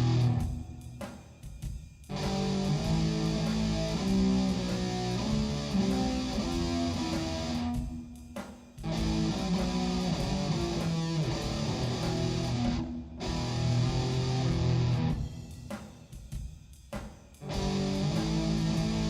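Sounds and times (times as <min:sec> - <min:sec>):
guitar notes: 0:00.0 - 0:00.7, 0:02.1 - 0:07.9, 0:08.9 - 0:15.2, 0:17.4 - 0:19.0.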